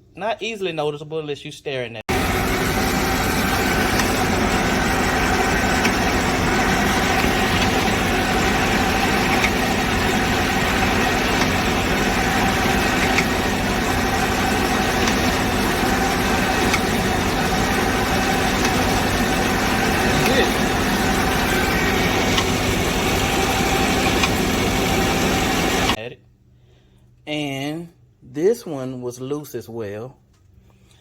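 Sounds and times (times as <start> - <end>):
car engine idling: 2.1 - 26.0.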